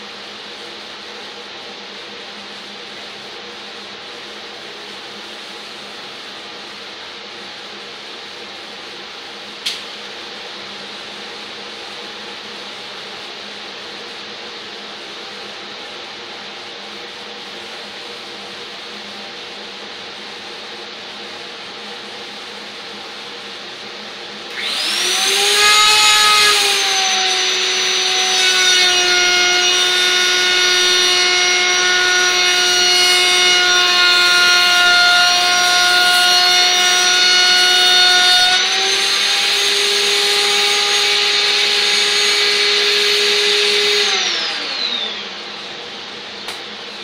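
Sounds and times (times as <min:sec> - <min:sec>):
dust collector running: 0:00.0 - 0:47.0
router whining while cutting wood: 0:24.5 - 0:46.7.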